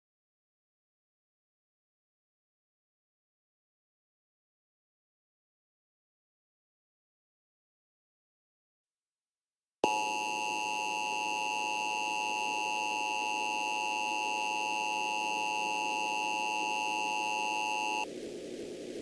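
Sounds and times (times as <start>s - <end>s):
two-tone electronic alarm: 9.8s - 18.1s.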